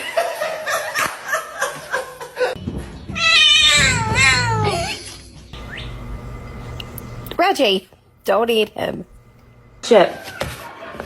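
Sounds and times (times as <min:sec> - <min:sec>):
cat yowling: 0:03.2 - 0:05.1.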